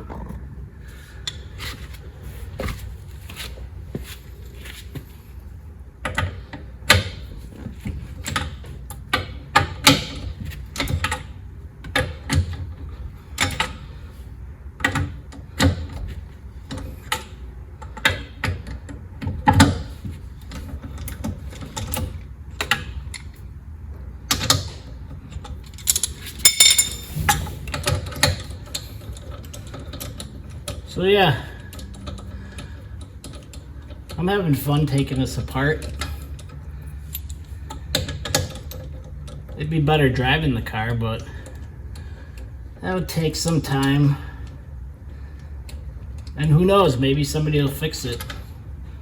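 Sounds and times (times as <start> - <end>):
short metallic ring: 25.9 - 27.3.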